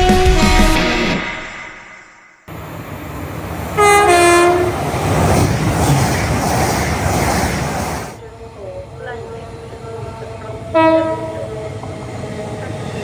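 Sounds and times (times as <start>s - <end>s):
train two-tone horn: 0.0s - 2.0s, 3.8s - 4.8s, 10.7s - 11.5s
train rumbling past: 2.5s - 13.0s.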